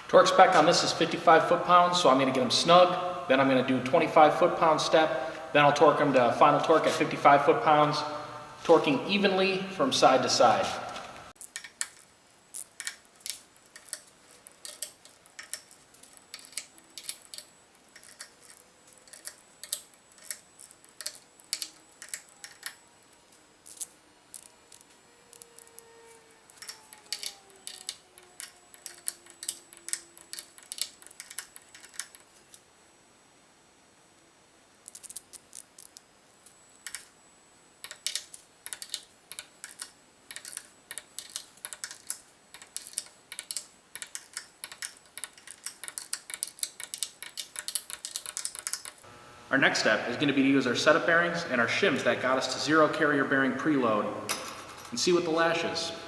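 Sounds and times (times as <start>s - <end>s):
ratchet wrench clicking: 11.4s - 22.8s, 23.7s - 32.3s, 37.8s - 49.0s.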